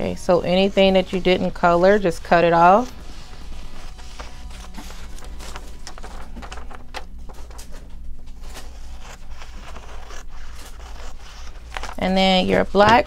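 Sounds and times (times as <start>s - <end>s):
scissors snipping paper: 8.4s - 13.0s.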